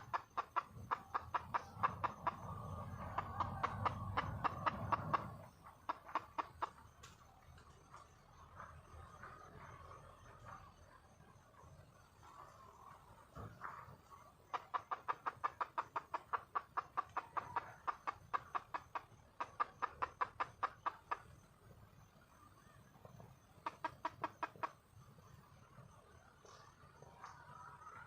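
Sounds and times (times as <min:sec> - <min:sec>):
hen clucking rapidly: 0:00.0 - 0:06.8, 0:14.4 - 0:21.4, 0:22.6 - 0:24.8.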